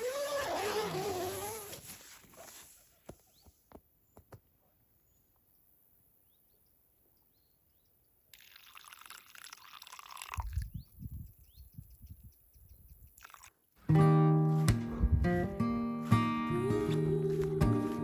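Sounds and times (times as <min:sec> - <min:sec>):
liquid pouring: 0:08.4 - 0:10.7, 0:13.2 - 0:13.5
faint bird chirps: 0:10.6 - 0:13.1.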